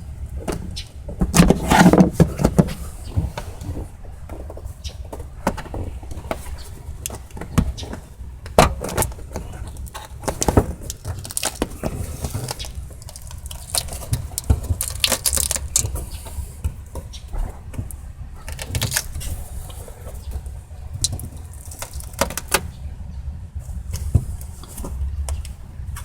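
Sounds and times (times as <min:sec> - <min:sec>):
steady low rumble: 0:00.0 - 0:26.0
tools and parts clicking and knocking: 0:07.0 - 0:16.3.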